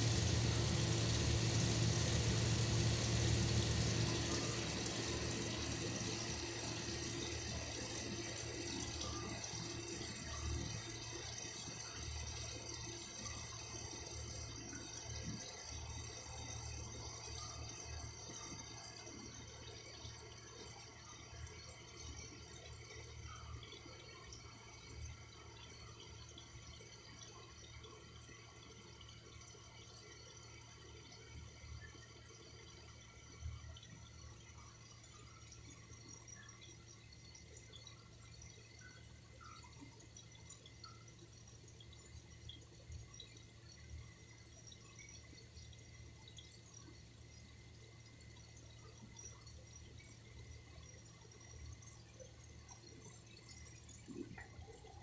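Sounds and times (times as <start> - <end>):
steady low hum: 0.0 - 8.4
small water drips: 0.0 - 17.3, 25.1 - 55.0
faint running water: 0.0 - 55.0.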